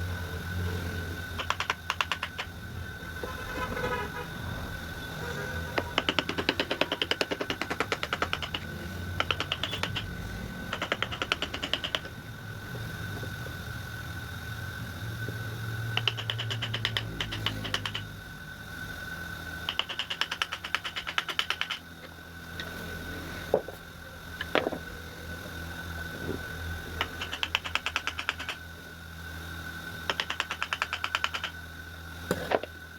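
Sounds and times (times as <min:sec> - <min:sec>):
steady high whine: 0:00.0 - 0:32.9
rapid tapping: 0:01.3 - 0:02.6, 0:05.8 - 0:12.2, 0:15.9 - 0:18.1, 0:19.6 - 0:21.8, 0:27.0 - 0:28.6, 0:30.1 - 0:31.6.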